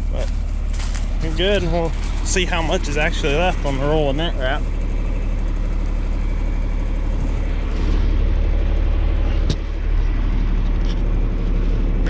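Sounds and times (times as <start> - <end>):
baler wrapping bale: 0.0 - 4.4
tractor engine running: 0.0 - 12.0.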